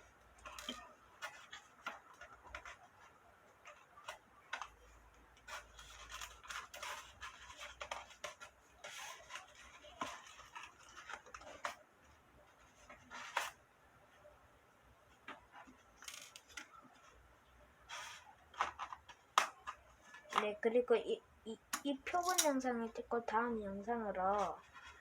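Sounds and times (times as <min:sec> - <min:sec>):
scratchy rustles: 0:00.4 - 0:13.6, 0:23.2 - 0:25.0.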